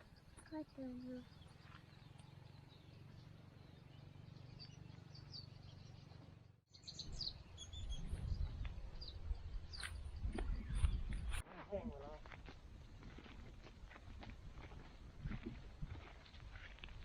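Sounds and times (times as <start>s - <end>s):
birds chirping: 0.0s - 11.4s.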